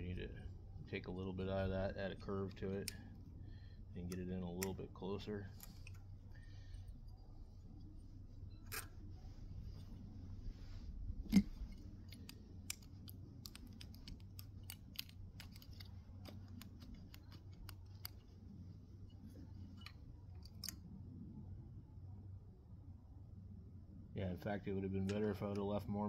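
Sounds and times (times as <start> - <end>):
steady low hum: 0.0 - 26.0
small metal parts clicking: 11.7 - 18.3.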